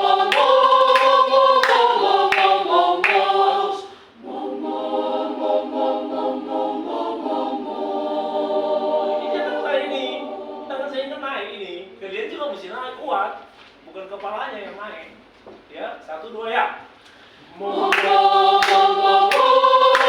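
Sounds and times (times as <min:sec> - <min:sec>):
choir singing held chords: 0:00.0 - 0:12.0, 0:17.4 - 0:20.0.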